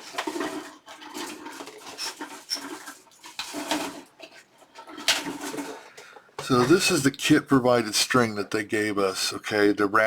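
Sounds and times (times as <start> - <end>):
rustling of small parts: 0.0 - 6.8.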